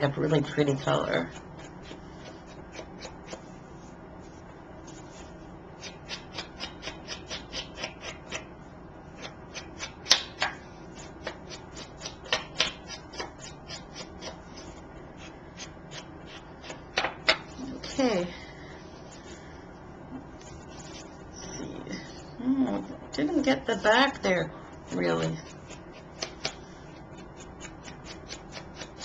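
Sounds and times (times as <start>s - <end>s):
ink pad scraping and tapping paper: 0.2s - 8.5s, 24.9s - 29.0s.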